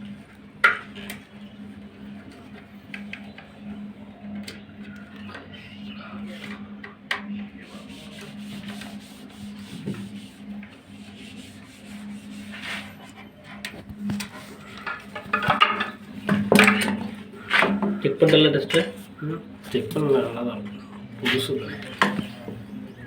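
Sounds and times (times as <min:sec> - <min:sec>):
hands rubbing and scraping parts: 0:06.2 - 0:20.4.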